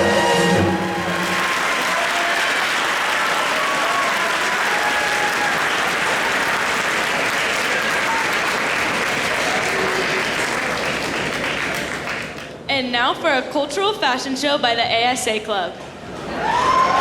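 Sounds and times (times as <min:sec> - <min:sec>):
audience applauding: 0:00.6 - 0:12.6.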